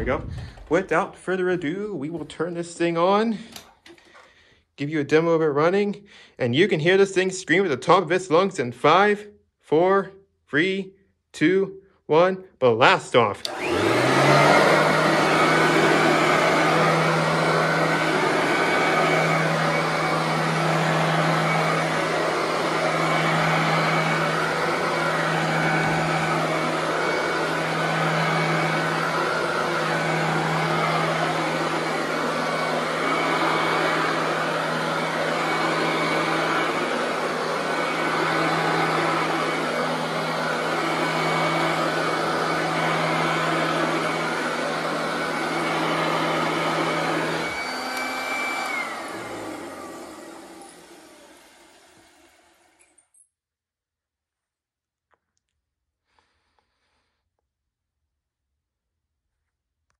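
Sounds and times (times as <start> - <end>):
vacuum cleaner running: 0.0 - 5.8, 12.8 - 53.1.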